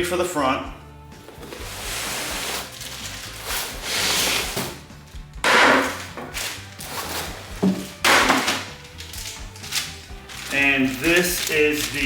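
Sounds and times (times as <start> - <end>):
background music with steady beat: 0.0 - 12.0
rustling and knocking of parts: 2.6 - 12.0.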